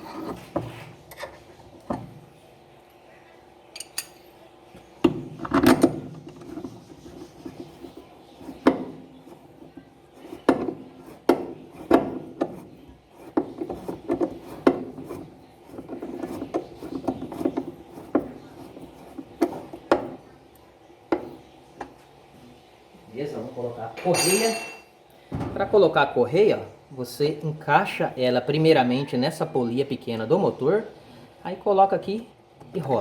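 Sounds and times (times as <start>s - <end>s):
rubbing sounds: 6.2s - 19.9s.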